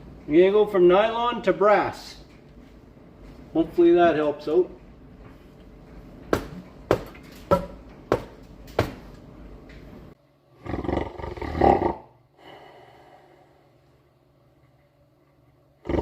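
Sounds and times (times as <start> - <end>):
sharp knocks: 6.3 - 9.0.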